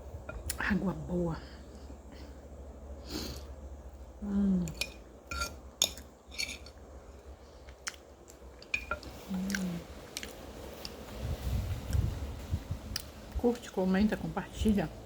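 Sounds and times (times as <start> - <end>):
cutlery clinking on a plate: 4.8 - 6.8.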